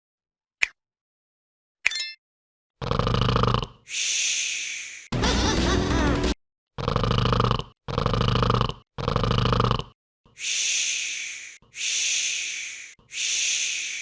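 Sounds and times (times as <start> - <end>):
cartoon rattling snores: 2.8 - 3.8, 6.8 - 10.0
long breathy exhales: 10.4 - 14.0.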